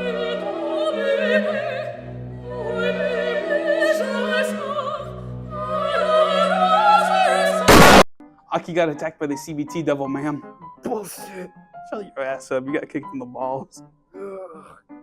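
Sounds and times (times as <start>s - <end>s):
operatic singing: 0.0s - 8.0s.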